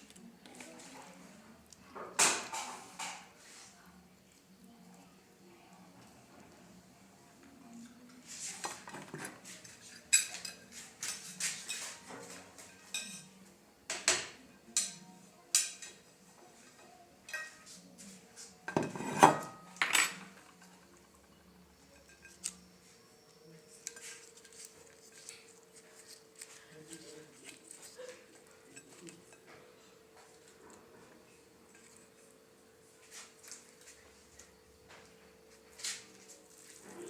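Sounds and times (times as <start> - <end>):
cutlery and dishes clinking: 2.1 - 3.4, 8.4 - 32.4.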